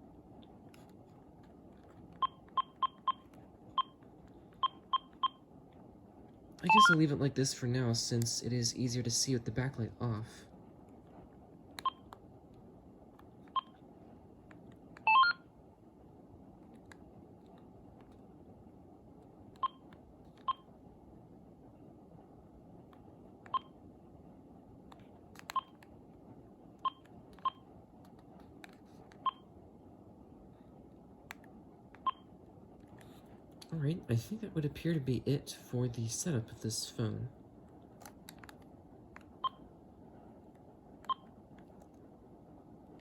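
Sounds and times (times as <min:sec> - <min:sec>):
phone key beeps: 0:06.7 - 0:07.0, 0:15.1 - 0:15.4.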